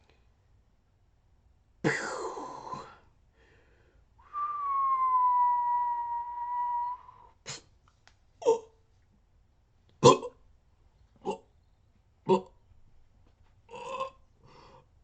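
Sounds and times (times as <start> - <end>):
whistled tone: 4.2 - 7.3.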